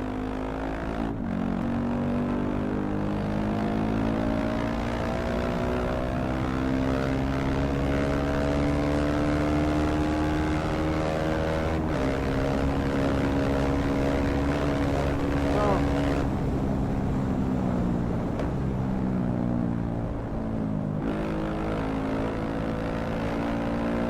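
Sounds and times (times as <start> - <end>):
motorcycle engine accelerating: 0.0 - 24.0.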